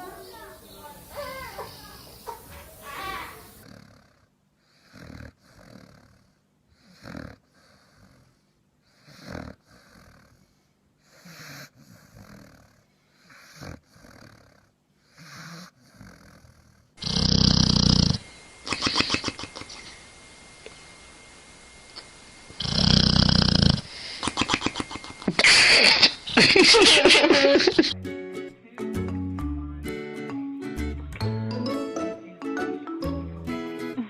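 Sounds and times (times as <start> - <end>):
dog snoring: 3.6 - 20.0, 22.0 - 26.6.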